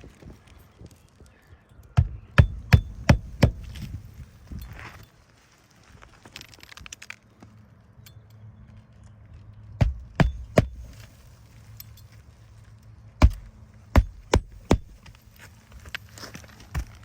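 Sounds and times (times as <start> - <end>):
hammer driving nails: 2.0 - 3.9, 13.2 - 15.1.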